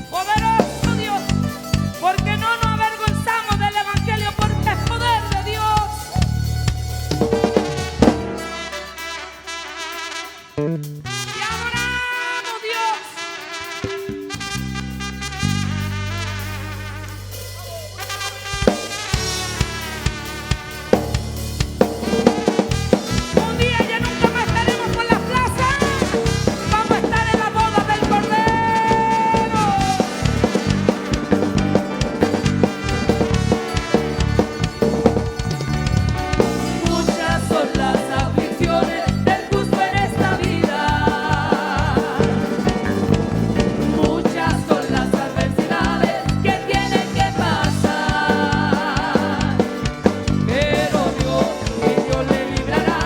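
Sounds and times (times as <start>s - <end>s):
bass guitar: 0.0s - 12.3s, 13.7s - 53.0s
drum kit beat: 0.0s - 53.0s
people singing: 23.3s - 31.1s, 36.4s - 53.0s.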